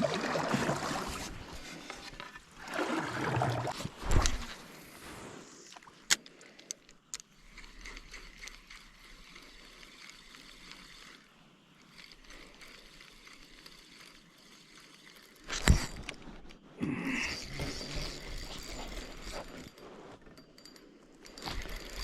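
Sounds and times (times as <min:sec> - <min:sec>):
water lapping and trickling: 0:00.0 - 0:16.6.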